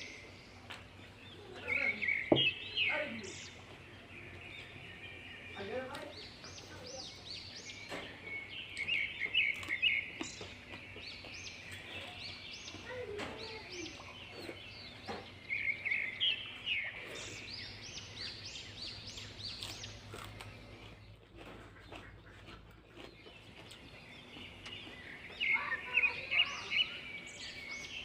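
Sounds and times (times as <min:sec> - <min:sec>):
birds chirping and trilling: 0:00.0 - 0:28.0.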